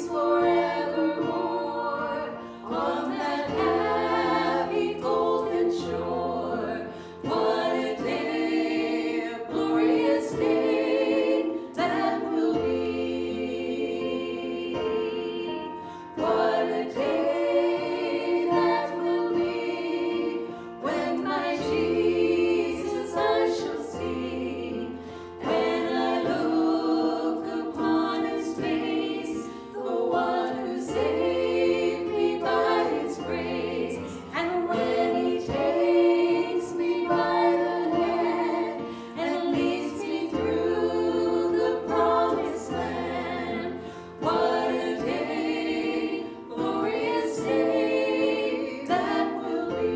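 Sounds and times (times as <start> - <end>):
choir singing worship song: 0.0 - 49.9.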